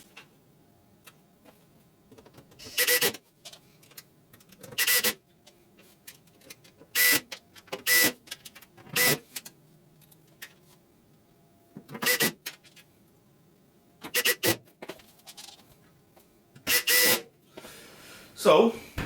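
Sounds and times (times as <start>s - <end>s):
cordless screwdriver motor bursts: 16.7s - 17.2s.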